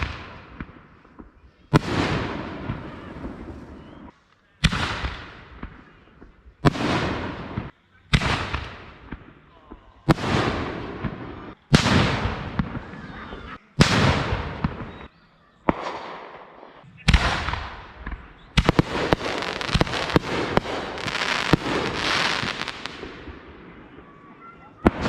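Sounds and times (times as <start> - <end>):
firework bangs: 0.0 - 9.4, 10.0 - 15.1, 15.7 - 25.0
crackling firework pops: 17.1 - 23.4.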